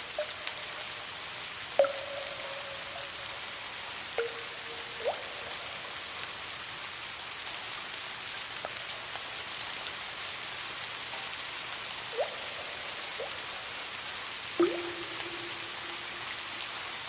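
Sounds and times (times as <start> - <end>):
soft rain hissing: 0.0 - 17.0
water drops plinking: 0.2 - 0.7, 1.8 - 3.5, 4.2 - 6.0, 12.1 - 13.7, 14.6 - 16.8.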